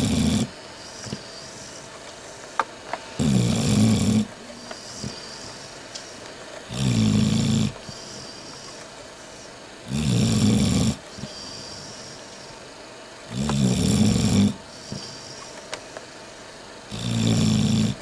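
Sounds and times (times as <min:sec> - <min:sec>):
dog snoring: 0:00.0 - 0:01.9, 0:03.2 - 0:05.8, 0:06.7 - 0:12.6, 0:13.3 - 0:15.6, 0:16.9 - 0:18.0.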